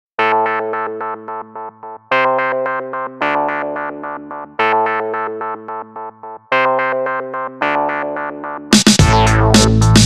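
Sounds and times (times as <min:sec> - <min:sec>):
synthesizer chords: 0:00.2 - 0:10.0
drum machine beat with bass: 0:08.7 - 0:10.0.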